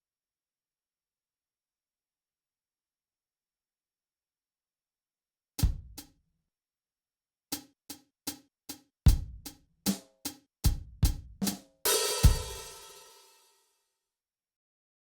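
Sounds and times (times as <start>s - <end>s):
kick drum thumps: 5.6s - 6.0s, 9.1s - 9.5s, 10.7s - 11.5s
light drum strokes: 10.7s - 13.2s
cymbal crash ringing: 11.9s - 13.3s.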